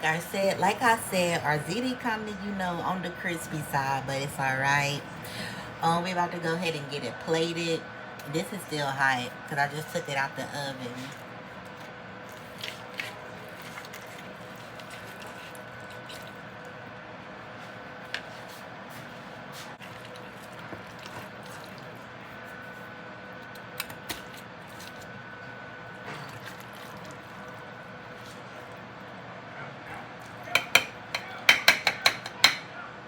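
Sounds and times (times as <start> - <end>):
steady background hum: 0.0 - 33.0
soft scooping of food: 11.1 - 16.8, 17.4 - 22.9
utensil clicking against dish: 30.5 - 32.6.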